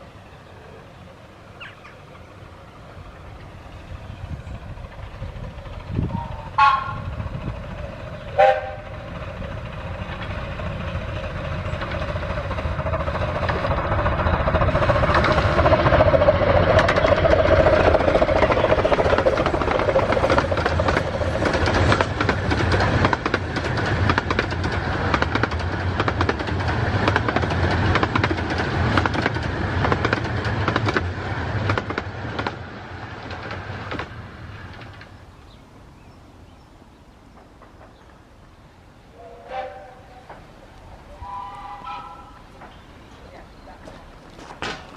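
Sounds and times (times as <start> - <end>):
train wheels clattering over rail joints: 3.4 - 35.7, 37.2 - 38.6, 39.5 - 44.9
steam train whistle toot: 6.1 - 7.1, 8.4 - 9.0, 39.1 - 40.4, 41.1 - 42.5.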